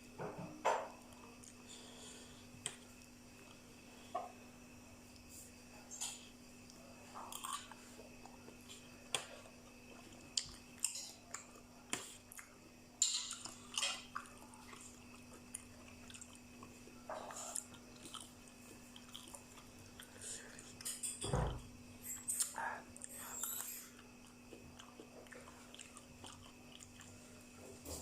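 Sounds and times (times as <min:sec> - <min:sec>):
person chewing food: 0:06.6 - 0:12.6, 0:13.2 - 0:21.0, 0:22.2 - 0:27.8.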